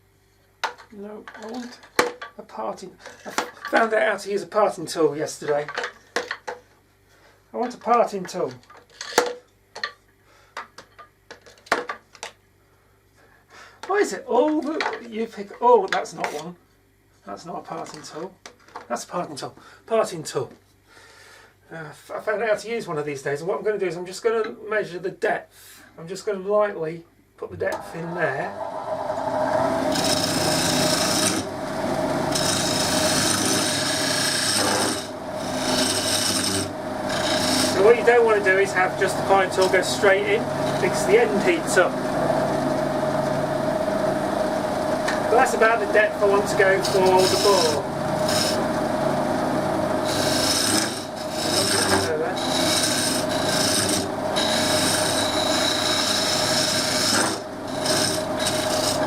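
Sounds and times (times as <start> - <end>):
wood lathe humming: 27.6 - 59.0
parting tool cutting wood: 27.7 - 43.5, 45.0 - 59.0.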